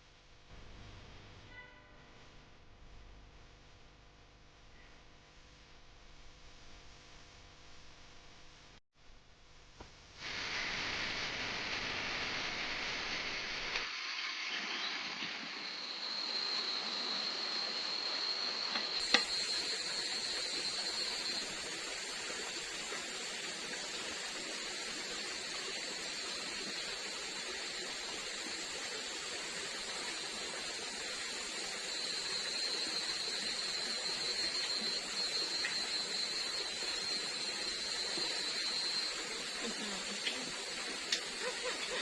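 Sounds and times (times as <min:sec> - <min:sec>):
even hiss: 0:09.8 - 0:42.0
high-pitched insect drone: 0:13.9 - 0:42.0.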